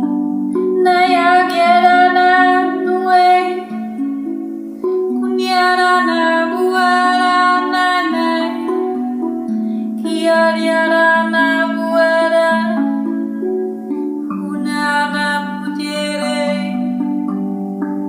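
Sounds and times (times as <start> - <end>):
steel tongue drum ringing: 0.0 - 18.0
woman singing wordless notes: 0.0 - 18.0.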